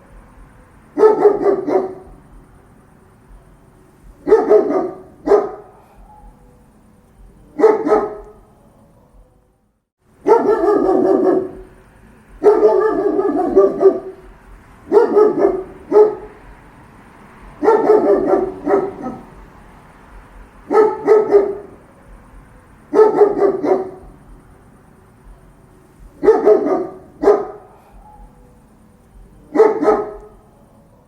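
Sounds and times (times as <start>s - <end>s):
dog barking deeply: 0.8s - 2.4s, 4.0s - 6.6s, 7.4s - 9.3s, 10.2s - 19.7s, 20.3s - 24.5s, 26.0s - 28.6s, 29.3s - 30.6s.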